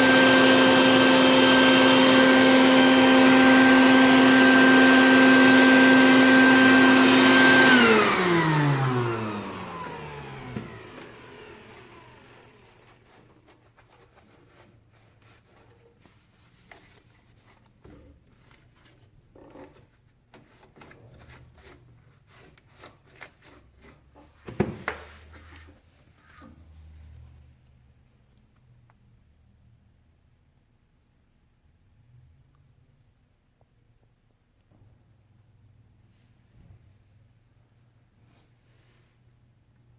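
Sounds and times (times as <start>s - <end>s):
treadmill motor whining: 0.0s - 13.2s.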